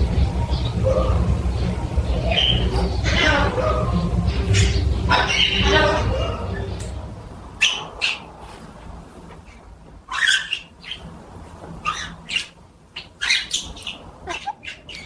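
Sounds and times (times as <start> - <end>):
parrot squawking: 2.2 - 6.9, 7.6 - 8.4, 10.1 - 11.1, 11.8 - 15.0.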